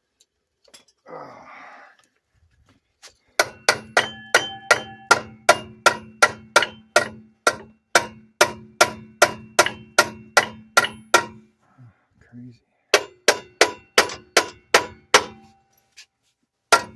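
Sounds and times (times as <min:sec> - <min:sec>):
hammer striking metal: 0:03.4 - 0:11.5, 0:12.9 - 0:15.6.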